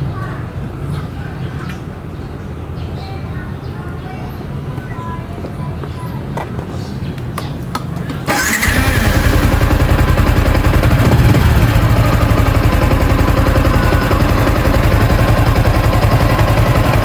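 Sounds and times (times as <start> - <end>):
motorcycle engine idling: 8.3 - 17.0.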